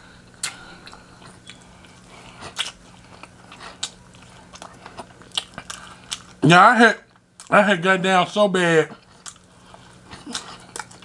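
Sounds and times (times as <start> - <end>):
faint low hum: 0.0 - 11.0
chewing: 0.4 - 6.4, 8.9 - 11.0
crunching fried chicken: 0.4 - 6.4, 9.0 - 11.0.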